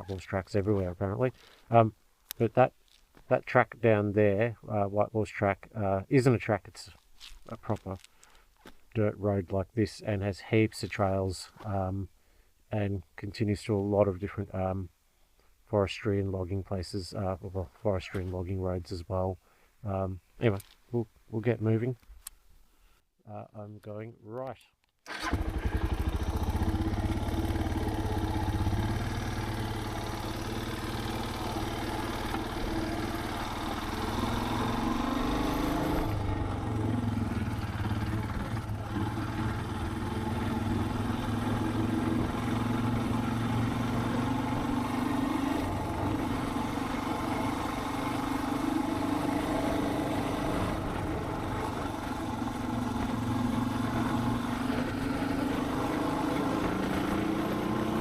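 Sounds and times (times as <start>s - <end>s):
motorcycle engine revving: 25.1s - 58.0s.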